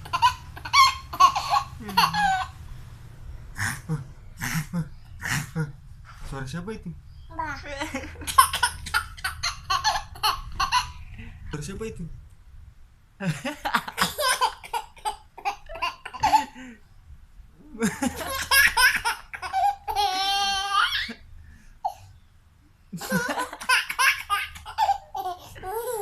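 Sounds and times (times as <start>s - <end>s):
small child laughing: 0.0s - 2.5s, 7.6s - 11.0s, 17.8s - 21.2s, 23.0s - 26.0s.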